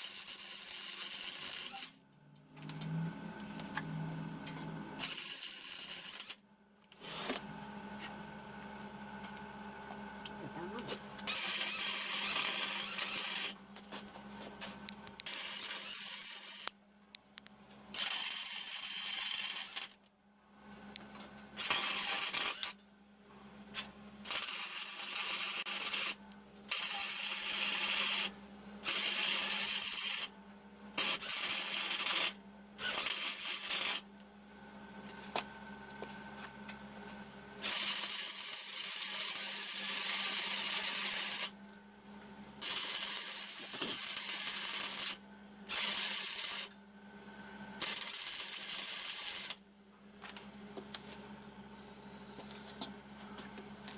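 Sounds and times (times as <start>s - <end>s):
welding arc crackling: 0.0s - 2.0s, 4.4s - 6.4s, 10.5s - 13.6s, 14.6s - 16.8s, 17.9s - 20.0s, 21.6s - 22.8s, 23.8s - 30.3s, 31.0s - 34.1s, 37.6s - 41.6s, 42.6s - 46.7s, 47.8s - 49.6s
low hum: 1.2s - 6.0s.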